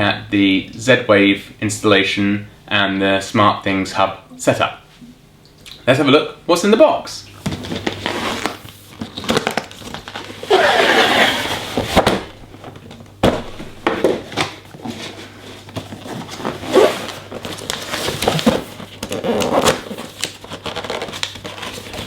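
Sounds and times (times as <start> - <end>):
cardboard box rustling and scraping: 7.5 - 12.3, 13.9 - 22.0
sharp knocks and thuds: 13.2 - 14.4.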